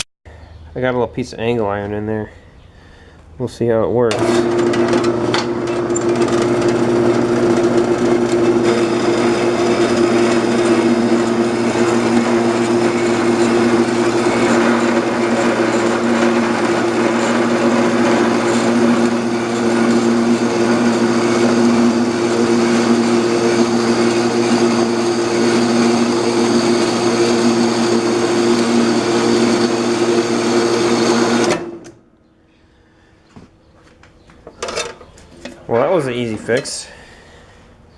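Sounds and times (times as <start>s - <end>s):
band saw cutting metal: 4.1s - 31.9s.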